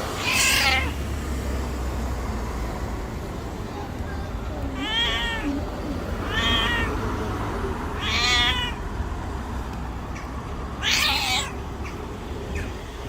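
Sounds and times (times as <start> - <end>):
cat meowing: 0.2 - 1.0, 4.6 - 7.0, 8.0 - 8.8, 10.2 - 12.0.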